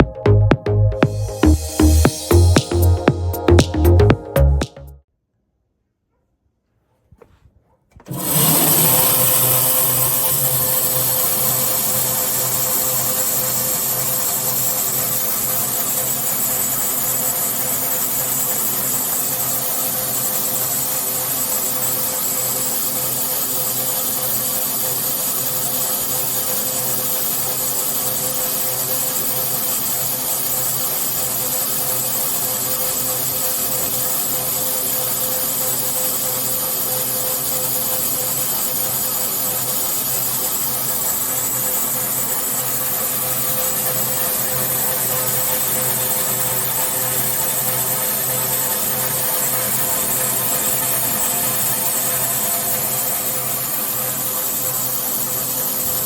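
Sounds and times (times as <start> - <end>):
band saw cutting wood: 8.1 - 16.8.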